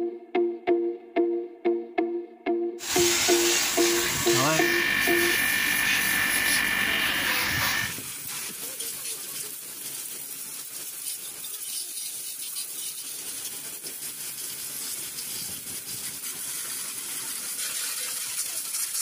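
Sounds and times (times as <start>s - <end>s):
pressure washer water jet hissing: 2.8s - 19.0s.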